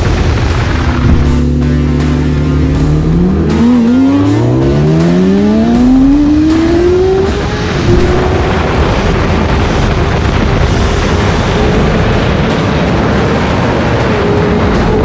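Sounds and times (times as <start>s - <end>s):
vehicle engines accelerating hard: 0.0s - 15.0s.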